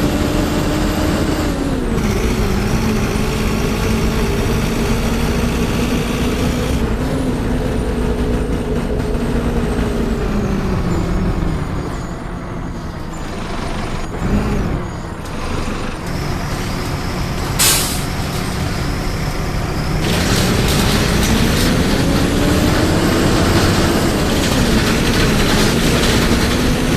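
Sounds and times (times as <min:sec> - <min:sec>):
bus diesel engine running: 0:00.0 - 0:26.9
air brake hiss: 0:17.6 - 0:18.2.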